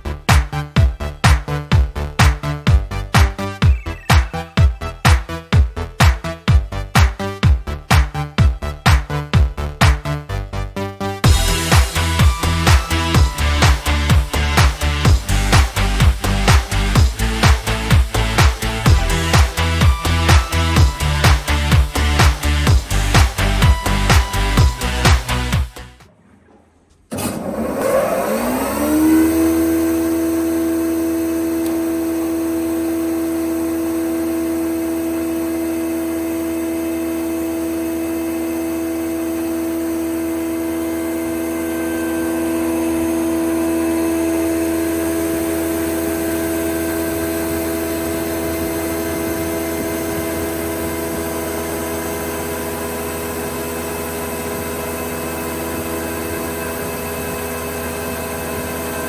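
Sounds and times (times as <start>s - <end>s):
thickness planer whining: 27.1s - 59.0s.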